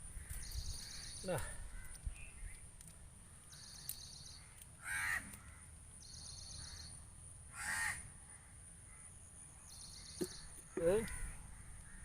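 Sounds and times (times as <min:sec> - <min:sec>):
crow cawing: 0:04.4 - 0:05.7, 0:07.5 - 0:09.1.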